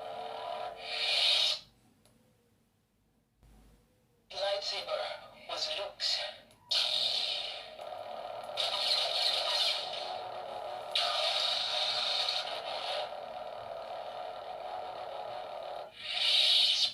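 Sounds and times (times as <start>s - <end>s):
toy lightsaber hum: 0.0s - 1.7s, 6.7s - 16.9s
lightsaber swing hiss: 16.0s - 16.9s.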